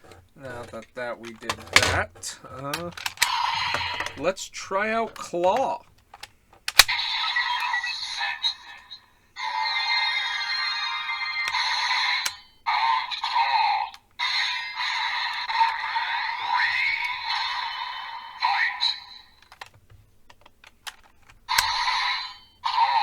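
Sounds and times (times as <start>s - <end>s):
plastic buckle clicks: 5.2s - 6.9s
toy belt electronic music and voice: 6.9s - 19.4s.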